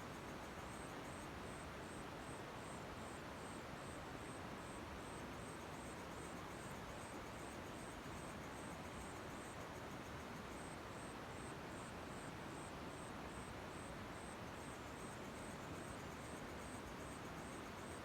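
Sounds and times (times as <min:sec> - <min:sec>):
cricket chirping: 0:05.1 - 0:18.0.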